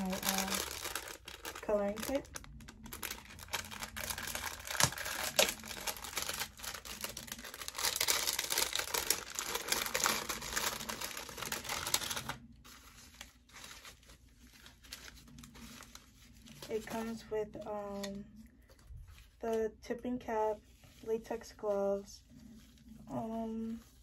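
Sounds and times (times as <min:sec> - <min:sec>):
packaging tearing and crinkling: 0:00.0 - 0:16.6.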